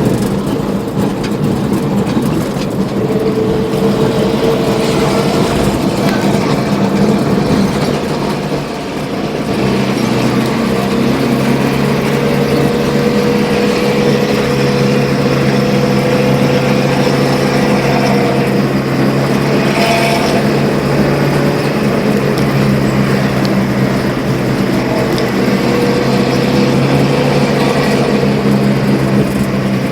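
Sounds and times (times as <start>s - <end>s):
diesel bus engine rumbling: 0.0s - 29.9s.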